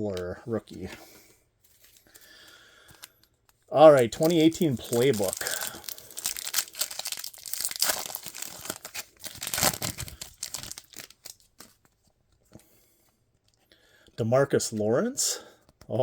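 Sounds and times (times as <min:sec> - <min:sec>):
foil wrapper tearing and crinkling: 0:03.9 - 0:11.8.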